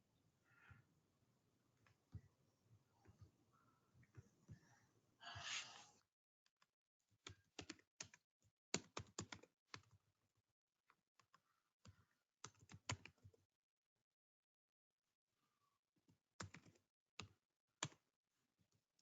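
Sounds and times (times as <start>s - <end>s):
faint keyboard typing: 7.2s - 10.0s, 11.2s - 13.4s, 16.4s - 18.0s.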